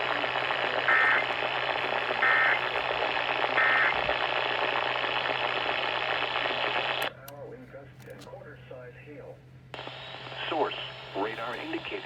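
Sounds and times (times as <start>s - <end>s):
radio hiss: 0.0s - 7.1s, 9.8s - 12.0s.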